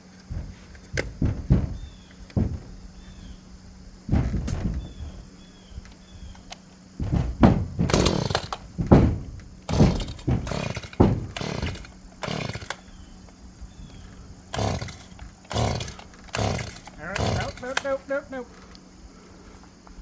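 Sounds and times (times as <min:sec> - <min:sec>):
chainsaw revving in bursts: 0:07.8 - 0:08.6, 0:09.7 - 0:12.9, 0:14.5 - 0:18.1.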